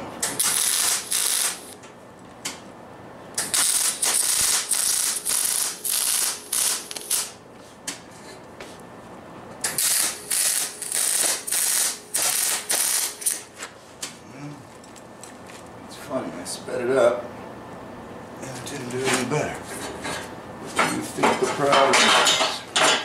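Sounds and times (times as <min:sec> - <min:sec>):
welder arc crackling: 0:00.2 - 0:01.9, 0:03.4 - 0:07.4, 0:09.6 - 0:13.5.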